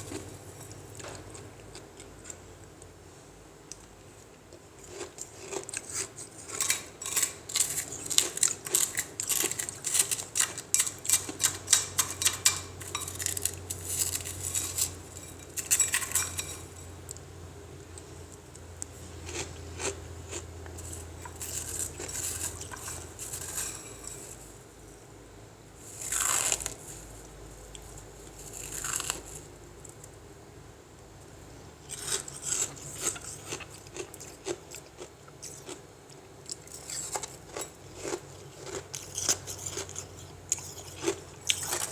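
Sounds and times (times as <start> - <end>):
ice clinking and cracking: 5.9 - 16.8, 20.8 - 24.4.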